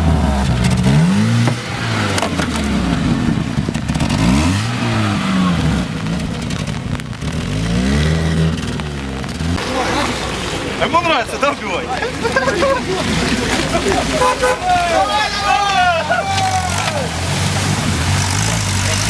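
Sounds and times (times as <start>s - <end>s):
clatter: 0.0s - 9.6s
car engine revving: 0.0s - 19.0s.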